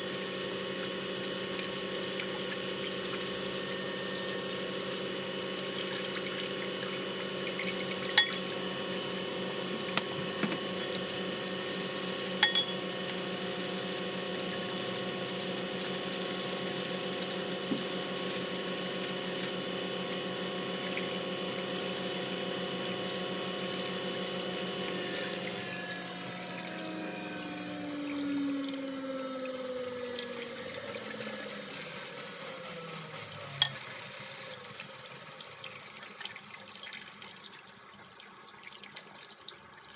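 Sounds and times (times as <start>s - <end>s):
motor hum: 0.0s - 36.2s
water running: 0.8s - 9.0s, 9.6s - 19.5s.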